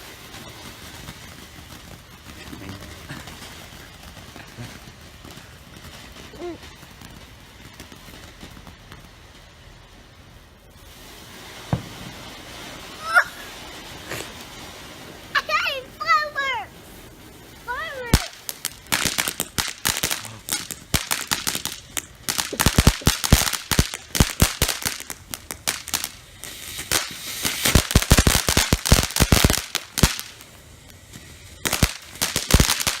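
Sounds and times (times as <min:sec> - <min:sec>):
fireworks crackling: 0:00.0 - 0:33.0
child's voice: 0:15.4 - 0:16.8, 0:17.6 - 0:18.4.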